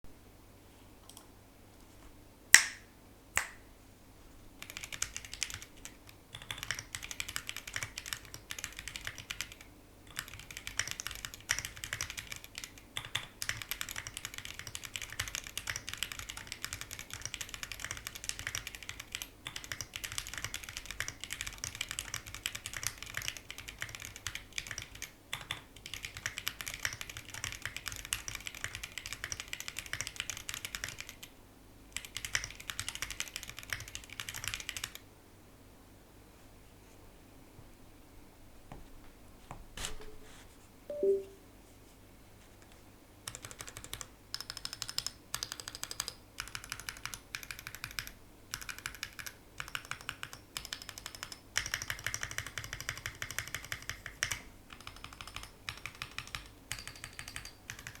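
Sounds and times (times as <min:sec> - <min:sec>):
typing on mechanical keyboard: 0:04.6 - 0:35.0, 0:43.2 - 0:58.0.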